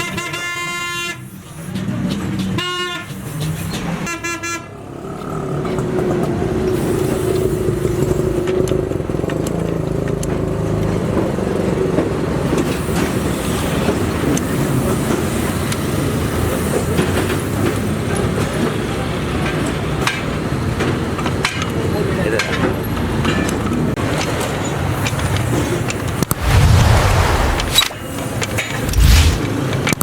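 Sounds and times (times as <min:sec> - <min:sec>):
road traffic: 0:28.8 - 0:29.8.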